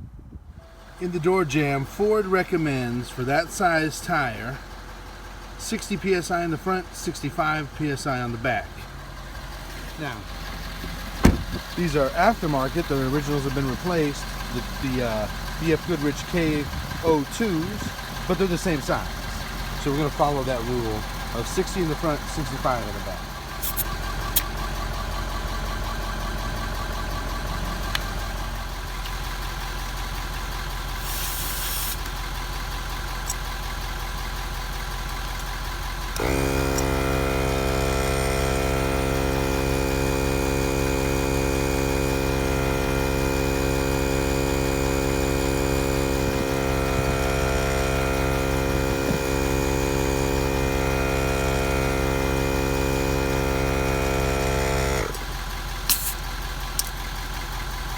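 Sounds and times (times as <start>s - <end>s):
air compressor droning: 0.6s - 57.9s
brief hiss: 31.0s - 32.1s, 55.9s - 56.2s.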